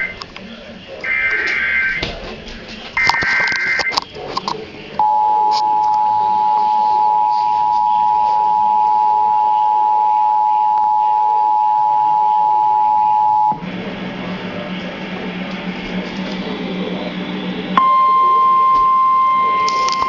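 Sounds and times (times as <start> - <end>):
loud dual-tone alert beep: 5.0 - 13.6, 17.8 - 20.0.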